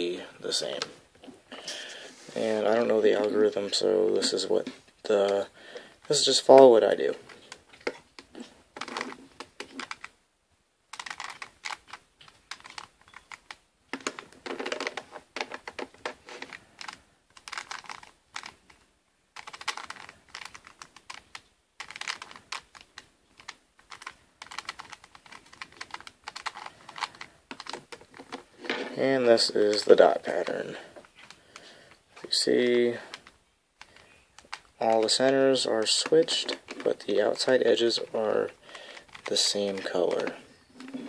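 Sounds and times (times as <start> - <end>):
puzzle cube clicking: 6.0 - 10.2, 10.9 - 18.8, 19.4 - 28.6, 29.5 - 41.0.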